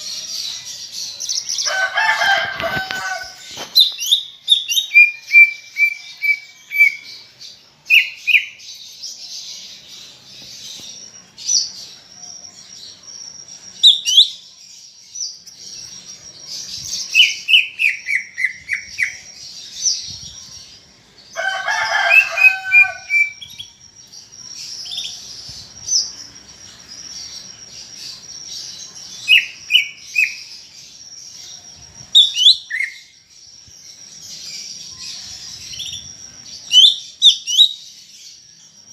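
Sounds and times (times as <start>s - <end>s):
bird whistled chirps: 2.9s - 7.2s, 7.9s - 8.6s, 10.8s - 14.5s, 21.9s - 33.3s, 34.9s - 37.9s.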